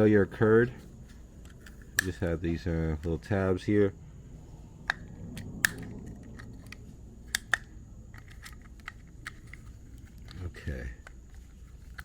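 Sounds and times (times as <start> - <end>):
low steady hum: 0.0 - 12.0
plastic clicks and snaps: 1.4 - 2.2, 4.8 - 12.0.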